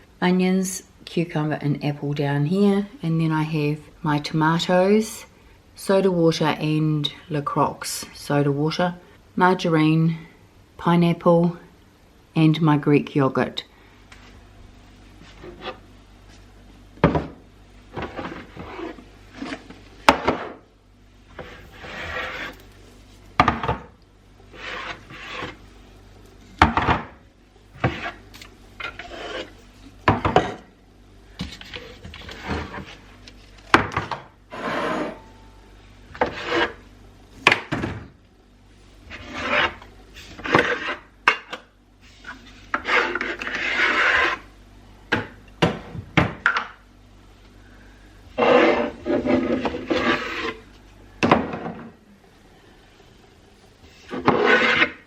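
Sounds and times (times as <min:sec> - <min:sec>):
rubbing and scraping: 0:18.0 - 0:20.6, 0:21.3 - 0:23.4, 0:24.5 - 0:25.7, 0:27.8 - 0:30.0, 0:36.2 - 0:36.8, 0:39.1 - 0:41.1, 0:42.1 - 0:44.5, 0:48.4 - 0:50.7, 0:53.9 - 0:55.0.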